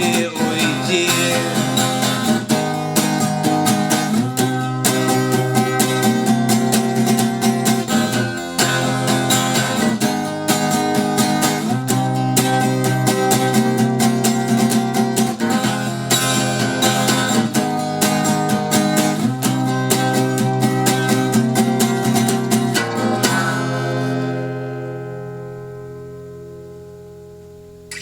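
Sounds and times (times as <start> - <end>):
acoustic guitar strumming: 0.0 - 28.0.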